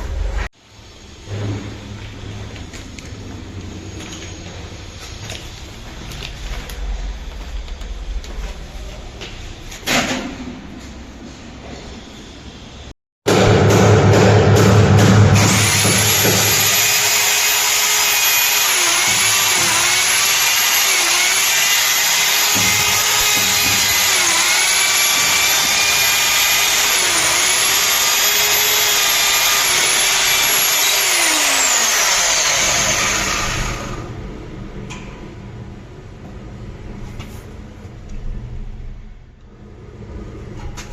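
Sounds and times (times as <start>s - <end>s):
electric drill running: 15.4s - 34.1s.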